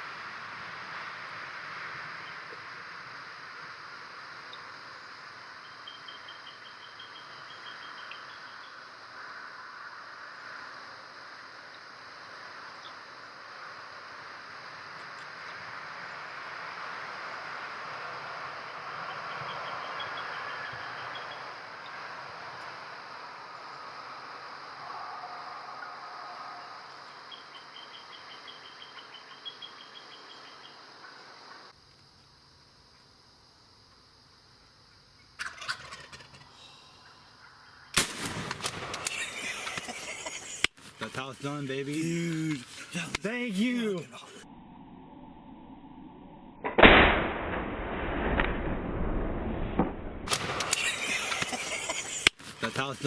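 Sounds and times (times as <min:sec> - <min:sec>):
insects droning: 0:00.0 - 0:46.6, 0:50.3 - 0:53.0
low bird calls: 0:05.6 - 0:08.8, 0:18.5 - 0:22.1, 0:24.7 - 0:31.2
sharp clicks: 0:38.0 - 0:40.8, 0:50.3 - 0:52.4
rapid high chirps: 0:38.0 - 0:44.4, 0:50.4 - 0:53.0.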